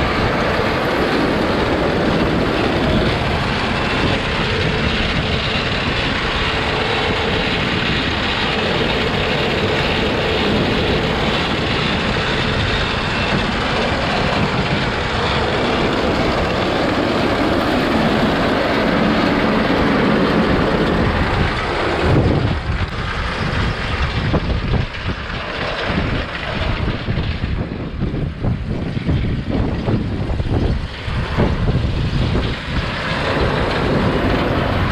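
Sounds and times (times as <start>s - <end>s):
farm machinery engine running: 0.0s - 34.9s.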